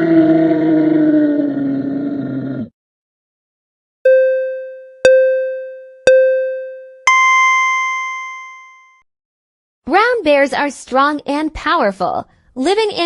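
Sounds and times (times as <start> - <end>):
animal grunting: 0.0 - 2.7
electronic countdown beeps: 4.1 - 8.4.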